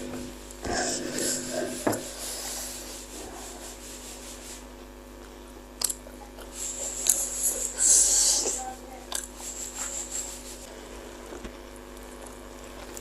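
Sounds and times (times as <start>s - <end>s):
person chewing: 5.8s - 10.4s, 11.2s - 13.0s.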